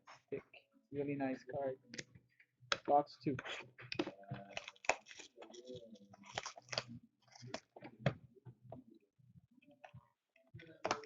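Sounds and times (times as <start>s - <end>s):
card packs rustling and crinkling: 3.9s - 7.8s.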